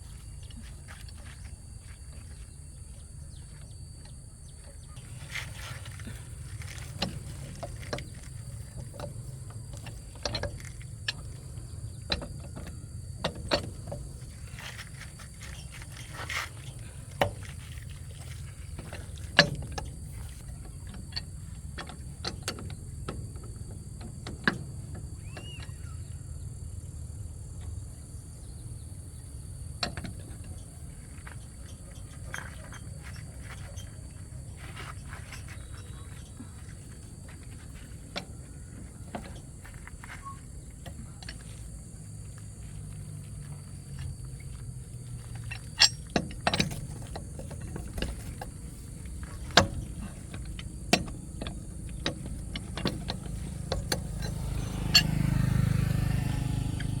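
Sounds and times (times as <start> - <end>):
steady low hum: 0.0 - 57.0
hand tools clinking on metal: 45.2 - 57.0.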